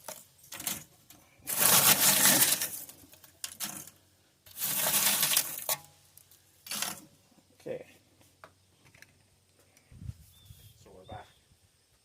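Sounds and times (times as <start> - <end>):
charcoal pieces knocking together: 4.5 - 5.9.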